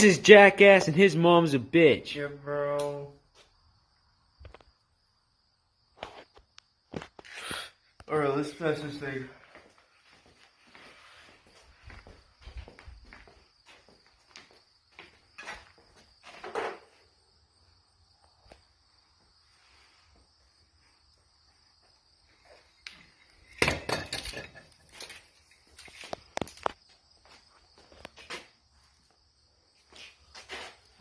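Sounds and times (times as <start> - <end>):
high insect drone: 0.0 - 31.0
objects clinking and clattering: 23.5 - 25.4.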